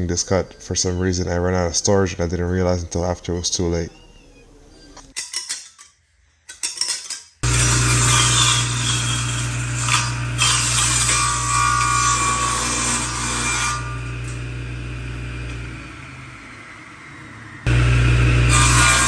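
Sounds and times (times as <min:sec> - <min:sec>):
power saw motor humming: 0:07.4 - 0:19.0.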